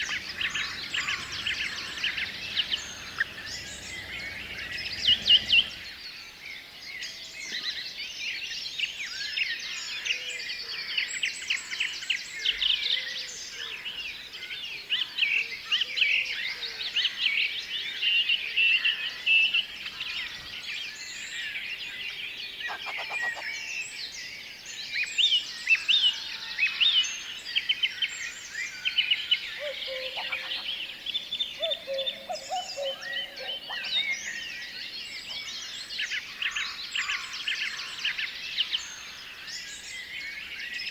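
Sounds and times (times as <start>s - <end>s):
low rumble: 0.0s - 5.9s
small birds chirping: 0.0s - 6.1s.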